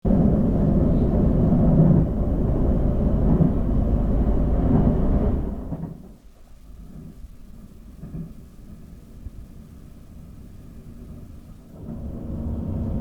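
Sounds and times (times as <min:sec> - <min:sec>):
loud low rumble: 0:00.0 - 0:06.0, 0:11.8 - 0:13.0.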